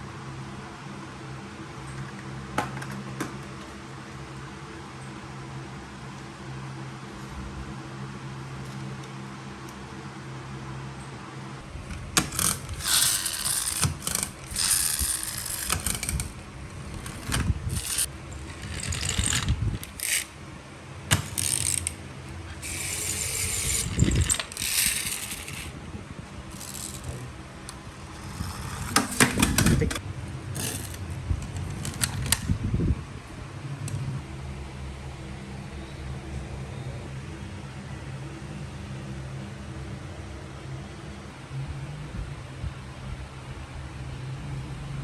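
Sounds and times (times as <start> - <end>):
plastic clicks and rattles: 11.9 - 20.3, 21.1 - 22.0, 26.5 - 30.0, 30.6 - 32.5
toy car motor whirring: 11.9 - 20.4, 21.1 - 25.8, 26.5 - 32.5.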